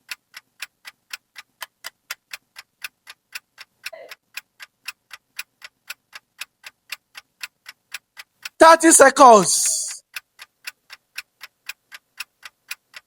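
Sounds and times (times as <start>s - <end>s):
clock timer ticking fast: 0.0s - 9.4s, 10.1s - 13.0s.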